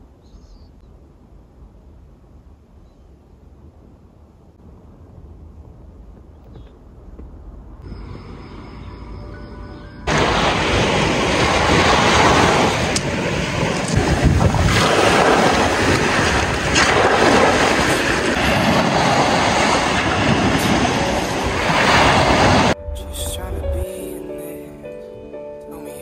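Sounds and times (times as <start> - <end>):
wind buffeting microphone: 10.1 - 23.0.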